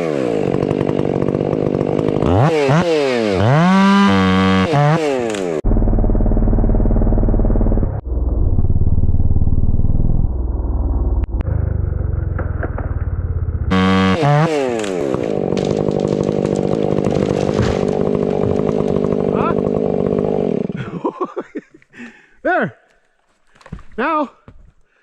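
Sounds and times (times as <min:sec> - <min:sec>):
chainsaw cutting and idling: 0:00.0 - 0:07.8, 0:13.7 - 0:21.6.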